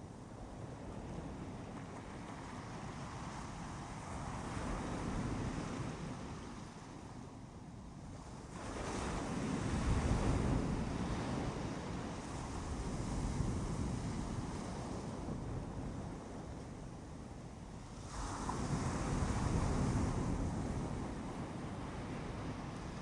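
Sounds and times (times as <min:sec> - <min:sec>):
waves washing onto beach: 0:08.4 - 0:23.0.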